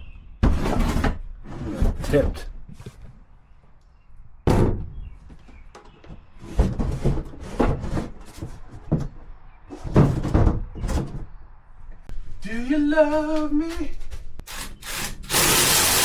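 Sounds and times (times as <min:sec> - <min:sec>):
objects bumping and scraping: 0:00.0 - 0:03.3, 0:04.5 - 0:12.1.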